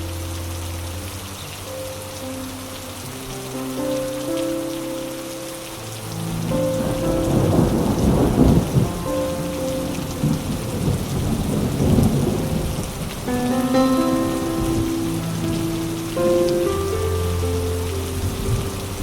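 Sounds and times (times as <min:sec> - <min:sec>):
steady rain falling: 0:00.0 - 0:19.0
rolling thunder: 0:06.2 - 0:17.0, 0:18.1 - 0:19.0.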